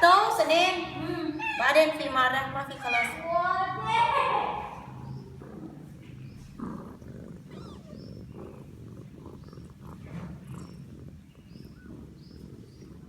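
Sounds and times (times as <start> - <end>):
cat purring: 0.0 - 13.0.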